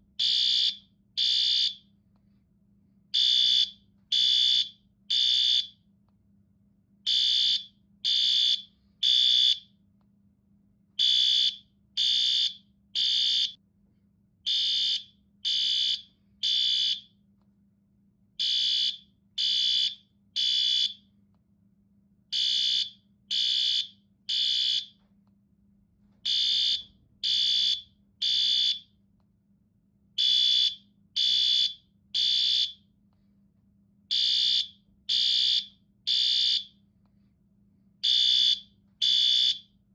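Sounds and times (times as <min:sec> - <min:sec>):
fire alarm beeps: 0:00.2 - 0:01.9, 0:03.2 - 0:05.8, 0:07.1 - 0:09.7, 0:11.0 - 0:13.6, 0:14.5 - 0:17.2, 0:18.4 - 0:21.1, 0:22.3 - 0:25.0, 0:26.2 - 0:29.0, 0:30.2 - 0:32.9, 0:34.1 - 0:36.8, 0:38.0 - 0:39.8.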